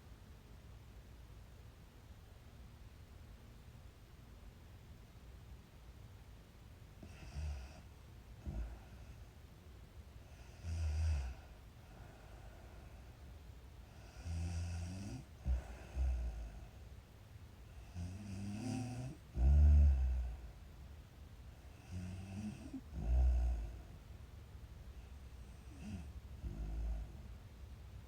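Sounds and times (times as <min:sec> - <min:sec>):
girl snoring: 0:17.9 - 0:20.4, 0:21.8 - 0:23.8, 0:25.4 - 0:27.2.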